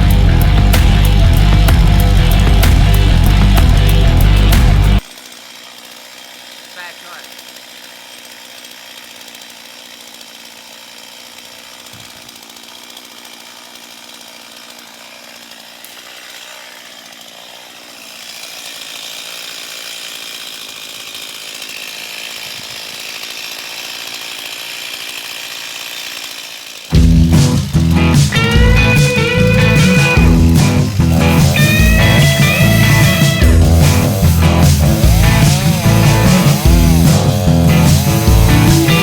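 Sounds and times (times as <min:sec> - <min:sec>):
loud guitar music: 0:00.0 - 0:05.0, 0:26.9 - 0:39.0
distant chainsaw running: 0:00.0 - 0:39.0.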